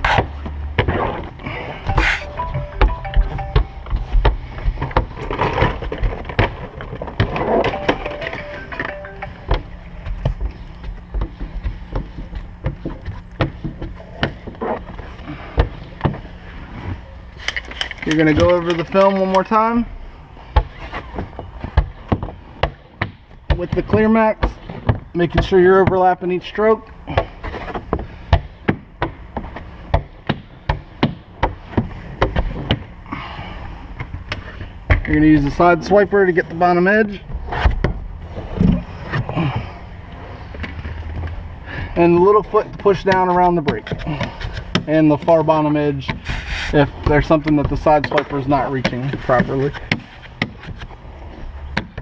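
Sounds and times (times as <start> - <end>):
steady low hum: 0.0 - 45.3
squeegee scraping on window: 46.2 - 46.9.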